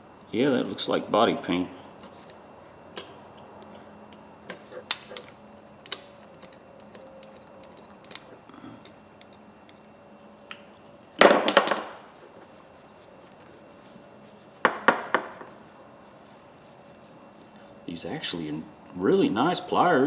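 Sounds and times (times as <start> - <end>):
sharp knocks: 14.7 - 15.5.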